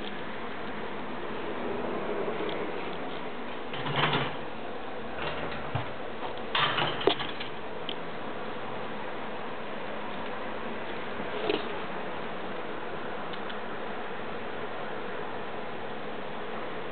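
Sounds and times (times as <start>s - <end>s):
rustling and scraping: 11.3s - 11.8s.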